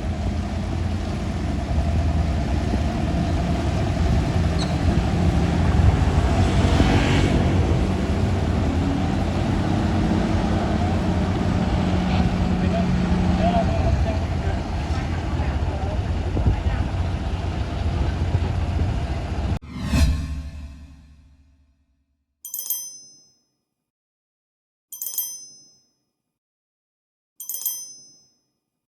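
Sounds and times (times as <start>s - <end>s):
diesel truck engine rumbling: 0.0s - 19.6s
small bell dinging: 22.5s - 23.6s, 25.0s - 26.1s, 27.4s - 28.6s.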